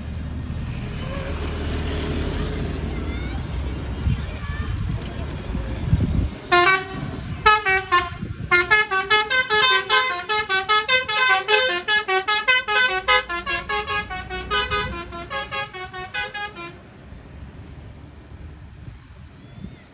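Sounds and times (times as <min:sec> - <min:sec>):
multi-tone musical bus horn: 0:06.4 - 0:16.9.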